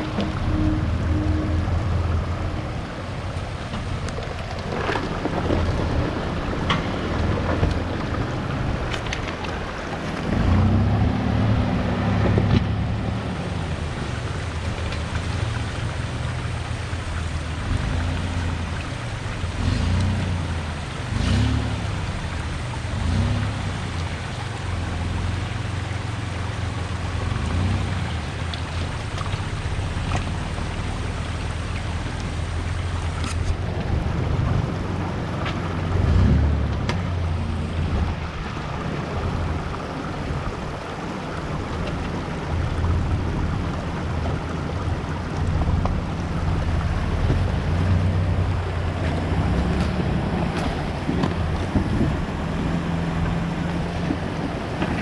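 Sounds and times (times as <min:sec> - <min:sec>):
steady rushing noise: 0:00.0 - 0:55.0
engine revving: 0:10.3 - 0:26.2, 0:36.0 - 0:38.1.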